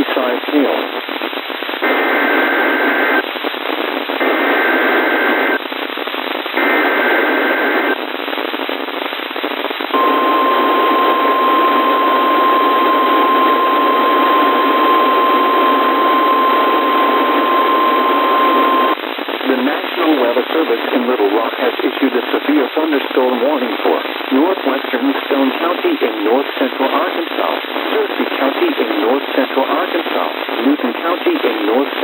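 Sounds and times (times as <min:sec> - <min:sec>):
radio static hiss: 0:00.0 - 0:32.0
steady alarm tone: 0:10.0 - 0:19.0.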